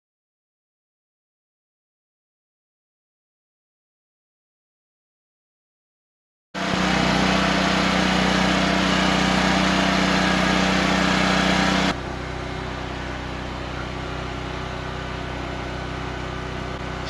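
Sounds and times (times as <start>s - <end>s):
generator engine running: 6.6s - 17.0s.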